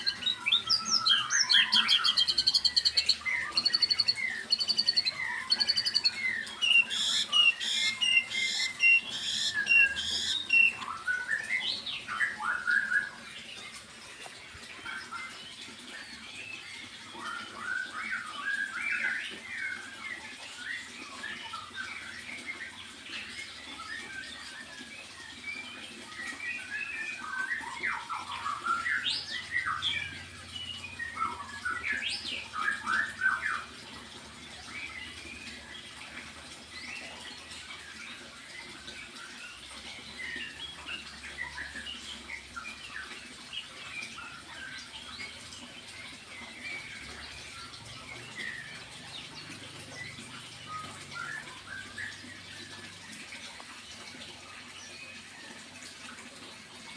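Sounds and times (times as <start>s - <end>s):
songbird chirping: 0.0s - 12.7s.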